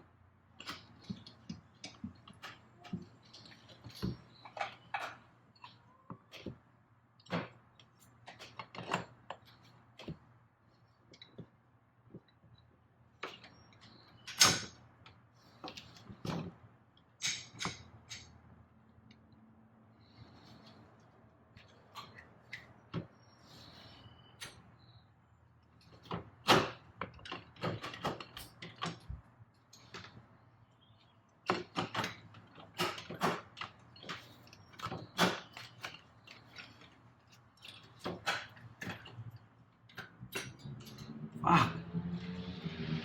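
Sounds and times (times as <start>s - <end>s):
metal tools clicking and clinking: 17.2s - 18.3s.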